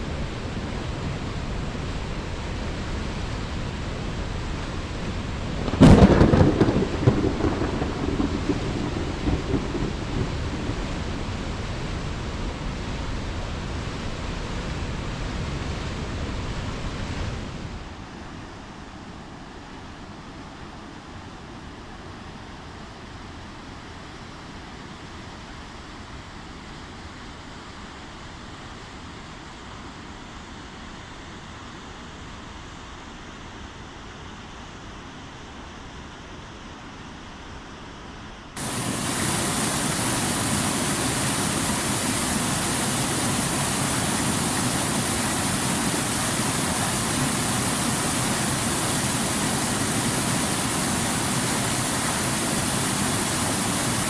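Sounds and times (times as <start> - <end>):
waterfall rushing: 38.6 - 54.0.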